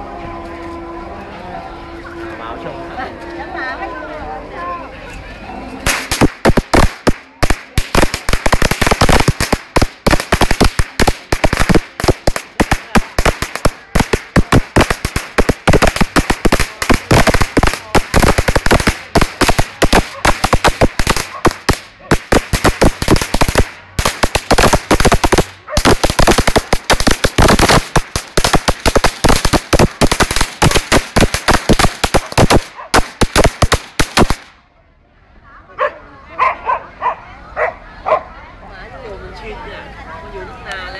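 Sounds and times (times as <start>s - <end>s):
firecrackers popping: 5.8s - 34.6s.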